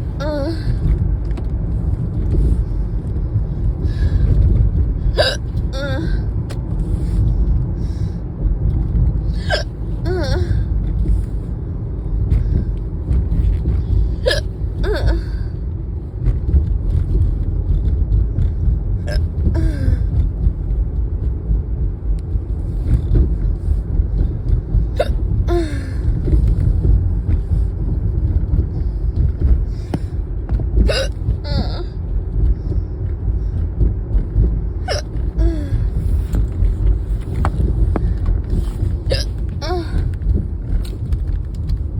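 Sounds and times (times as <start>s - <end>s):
car rumbling on the road: 0.0s - 41.9s
person hiccuping: 5.2s - 6.1s, 9.4s - 10.6s, 14.2s - 15.3s, 30.9s - 31.9s, 34.9s - 35.6s, 39.1s - 39.9s.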